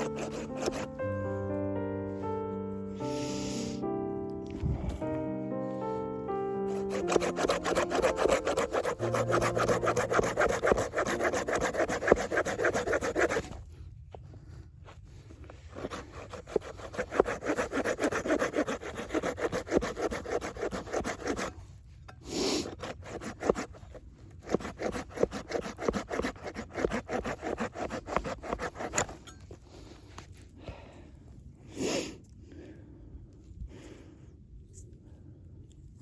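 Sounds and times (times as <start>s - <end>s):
saw cutting through wood: 0.0s - 1.0s, 6.7s - 13.6s, 15.7s - 21.6s, 22.4s - 29.2s.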